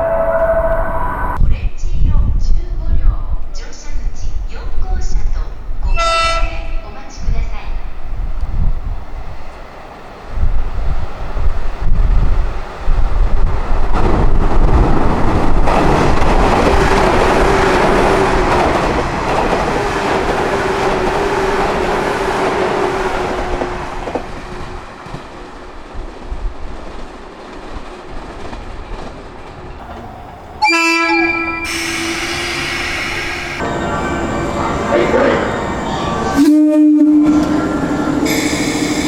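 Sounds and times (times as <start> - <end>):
train air horn blast: 0.0 - 1.4, 5.9 - 6.8, 30.6 - 33.6, 36.3 - 39.0
electric train rushing past: 0.0 - 1.5, 5.5 - 26.6, 29.5 - 39.0.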